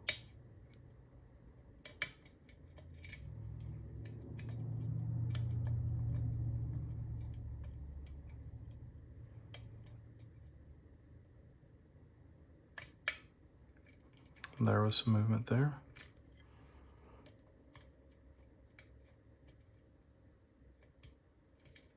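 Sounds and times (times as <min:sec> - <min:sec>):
low hum: 0:02.7 - 0:12.6.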